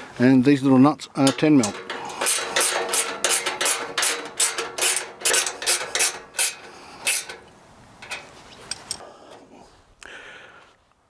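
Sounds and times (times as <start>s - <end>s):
light handling: 1.2s - 9.0s
wrench tightening nuts: 1.2s - 9.0s.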